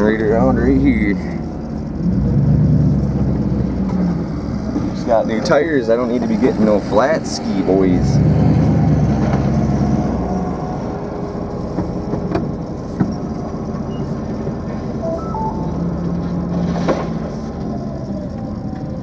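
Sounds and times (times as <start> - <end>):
truck engine running: 0.0 - 19.0
tyres rolling: 9.2 - 15.0.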